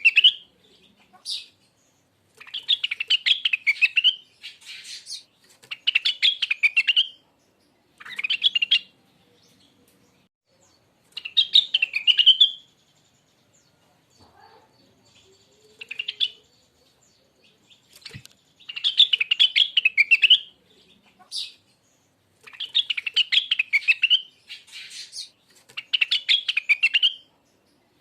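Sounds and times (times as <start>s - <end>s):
songbird twittering: 10.5s - 27.8s.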